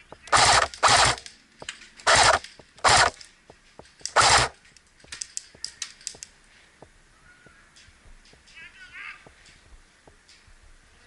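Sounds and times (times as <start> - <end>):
airsoft gun full-auto bursts: 0.3 - 1.3, 2.0 - 3.2, 4.0 - 4.6
snaps of single shots: 0.3 - 1.4, 2.0 - 3.3.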